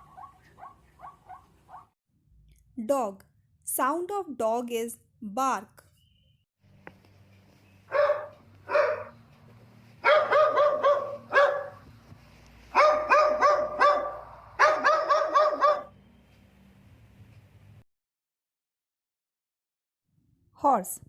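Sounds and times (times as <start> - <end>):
dog barking: 0.0 - 2.0, 7.9 - 9.2, 10.0 - 11.8, 12.7 - 15.9.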